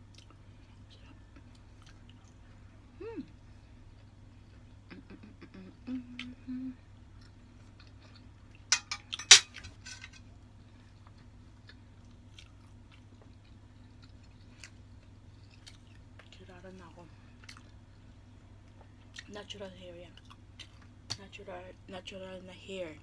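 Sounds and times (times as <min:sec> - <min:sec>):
low steady hum: 0:00.0 - 0:23.0
chewing and biting food: 0:01.4 - 0:02.5, 0:10.9 - 0:16.4.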